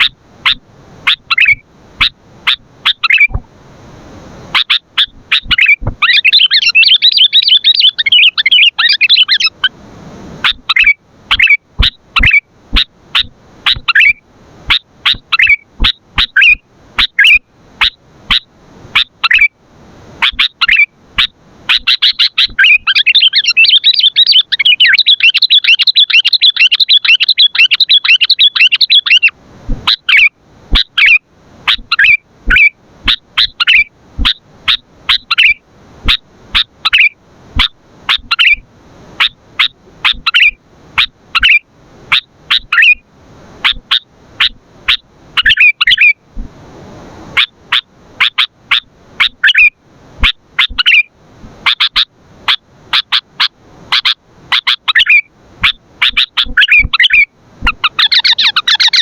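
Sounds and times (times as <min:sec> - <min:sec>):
bird chattering notes: 0:00.0 - 0:03.4, 0:04.6 - 0:09.7, 0:10.4 - 0:17.4, 0:21.7 - 0:29.3, 0:29.9 - 0:38.6, 0:39.2 - 0:40.6, 0:41.4 - 0:43.0, 0:54.0 - 0:59.0
short sharp bird calls: 0:00.0 - 0:03.4, 0:04.5 - 0:09.7, 0:10.4 - 0:18.4, 0:20.2 - 0:38.6, 0:53.0 - 0:59.0.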